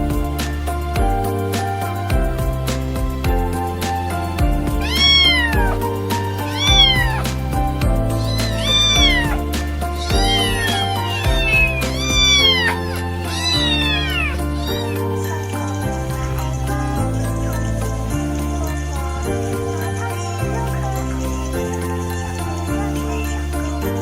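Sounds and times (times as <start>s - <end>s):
background music: 0.0s - 24.0s
cat meowing: 4.8s - 7.4s, 8.0s - 17.7s.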